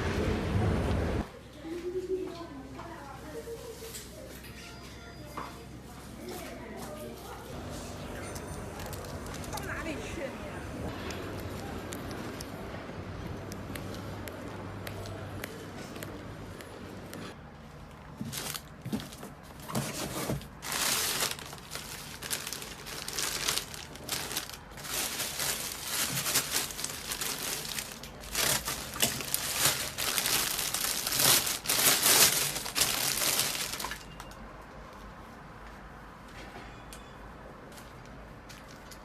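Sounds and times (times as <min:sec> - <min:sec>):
packaging crinkling: 0:08.3 - 0:10.1, 0:18.2 - 0:34.4.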